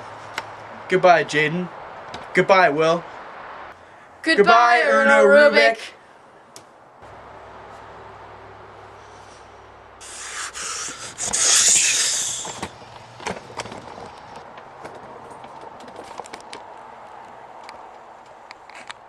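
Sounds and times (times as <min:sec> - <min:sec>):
loud hissing rush: 0:10.0 - 0:12.9.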